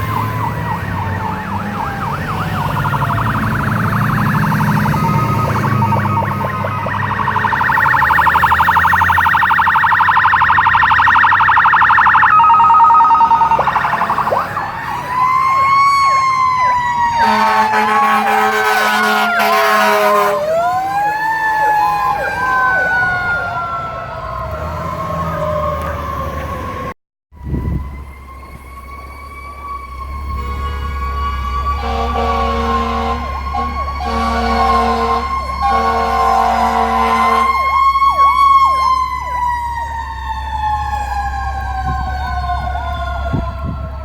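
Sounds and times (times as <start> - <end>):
electronic siren warble and wail: 0.0 - 44.0
low steady siren tone: 0.0 - 44.0
siren yelp: 0.0 - 44.0.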